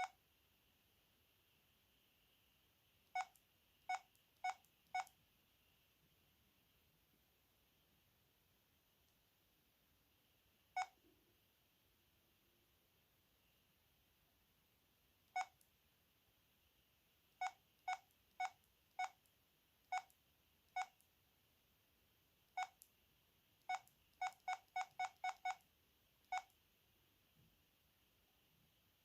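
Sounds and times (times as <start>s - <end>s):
phone key-press beeps: 17.4s - 19.2s, 22.6s - 22.8s, 23.7s - 25.6s.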